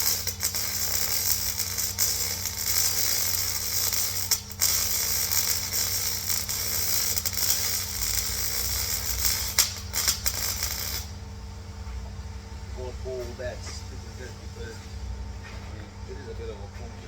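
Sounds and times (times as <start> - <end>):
power tool abrading metal: 0.0 - 11.2.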